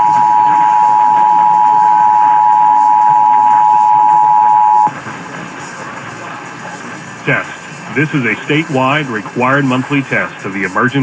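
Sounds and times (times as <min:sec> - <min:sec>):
two-tone alert signal: 0:00.0 - 0:04.9
low hiss: 0:00.0 - 0:11.0.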